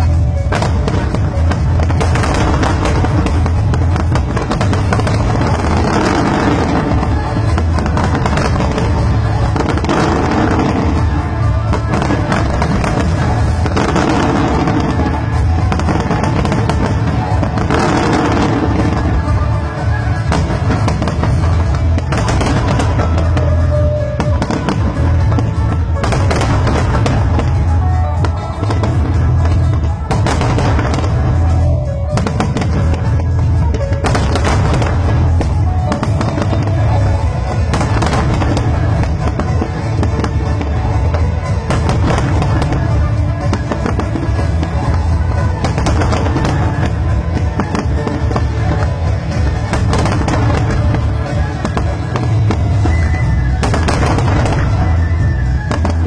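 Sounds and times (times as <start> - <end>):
fireworks bursts and crackles: 0.0 - 56.0
music playing: 0.0 - 56.0.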